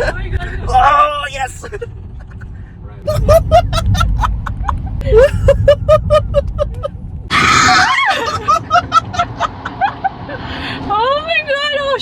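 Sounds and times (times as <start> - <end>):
car rumbling: 0.0 - 12.0
person screaming: 7.3 - 8.2
people laughing: 7.8 - 10.2.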